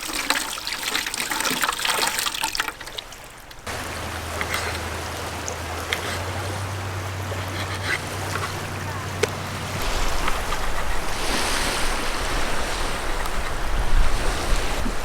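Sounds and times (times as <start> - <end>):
water trickling and splashing: 0.0 - 15.0
steady wash of noise: 3.7 - 15.0.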